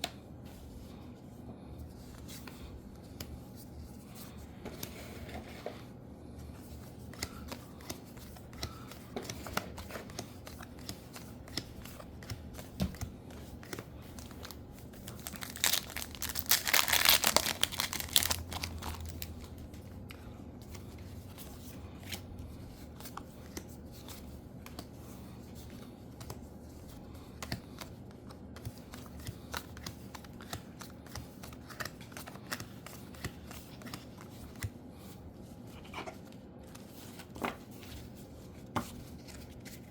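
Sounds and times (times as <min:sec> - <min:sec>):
cards clicking and rustling: 0:07.0 - 0:19.7, 0:28.6 - 0:34.8
foil pack crinkling: 0:14.3 - 0:19.4.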